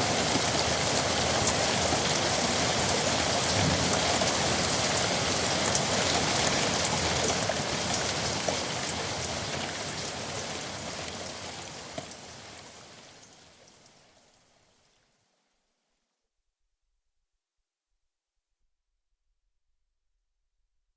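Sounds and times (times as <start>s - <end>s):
raindrops hitting surfaces: 0.0s - 15.1s.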